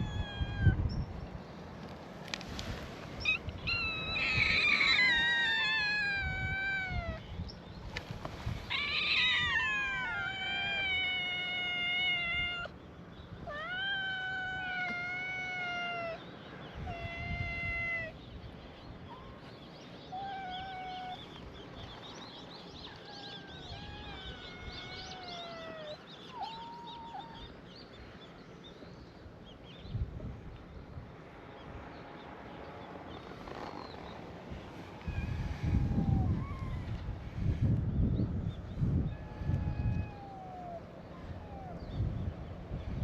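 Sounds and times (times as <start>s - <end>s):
cats meowing: 0.0s - 0.8s, 3.2s - 7.2s, 8.7s - 12.8s, 13.4s - 16.2s, 16.8s - 18.2s, 20.1s - 21.4s, 23.0s - 27.5s, 39.0s - 41.8s.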